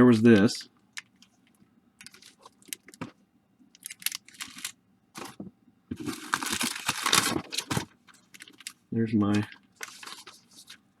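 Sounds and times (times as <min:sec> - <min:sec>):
card packs crinkling: 0:02.0 - 0:03.1, 0:03.8 - 0:10.8.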